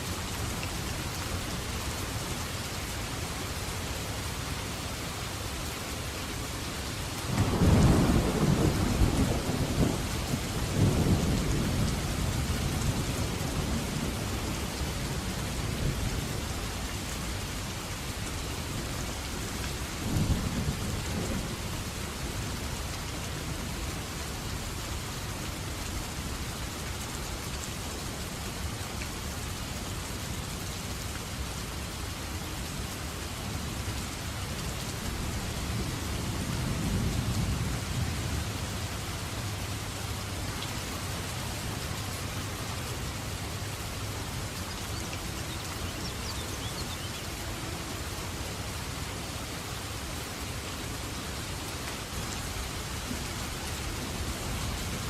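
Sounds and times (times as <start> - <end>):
steady rain falling: 0.0 - 55.0
thunder rumbling: 7.3 - 14.2.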